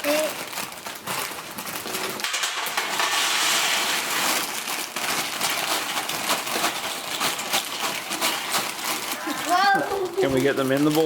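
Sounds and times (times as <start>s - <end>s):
plastic snack bags crinkling: 0.0s - 11.0s.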